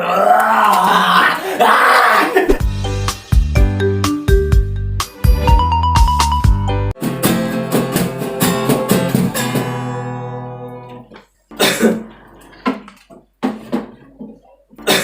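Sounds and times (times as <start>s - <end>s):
person coughing: 11.6s - 12.2s, 14.8s - 15.0s.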